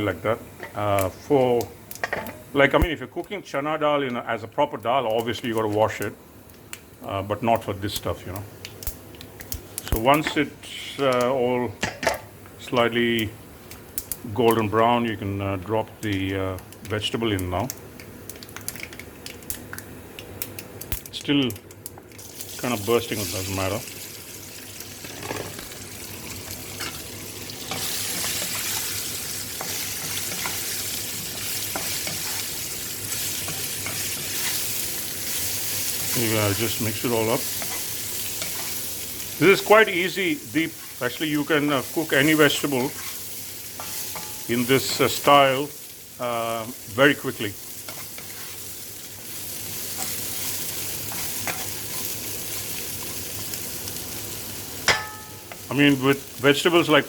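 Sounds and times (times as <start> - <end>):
hot oil sizzling in a pan: 0.0 - 57.0
oil pops and crackles: 8.0 - 10.2, 15.9 - 22.5.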